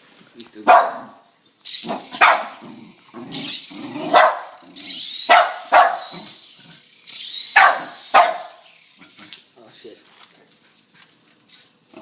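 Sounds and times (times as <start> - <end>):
dog barking: 0.6 - 1.2, 2.0 - 2.6, 4.1 - 4.6, 5.3 - 6.1, 7.6 - 8.6.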